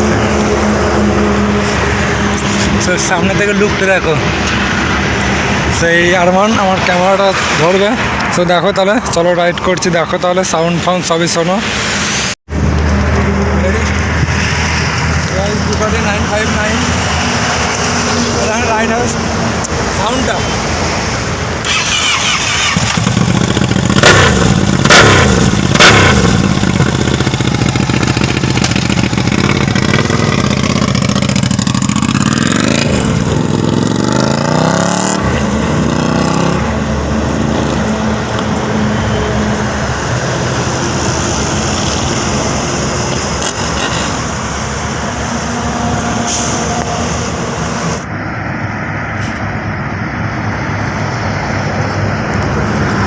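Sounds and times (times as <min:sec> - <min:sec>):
motorcycle engine revving: 0:21.6 - 0:46.2.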